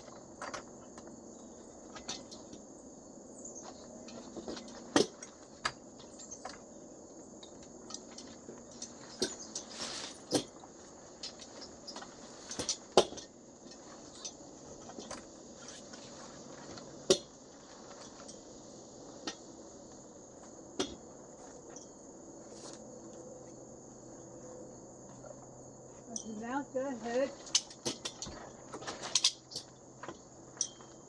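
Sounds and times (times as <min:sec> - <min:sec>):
insect trill: 0:00.0 - 0:31.0
metal frame clinking: 0:30.5 - 0:31.0.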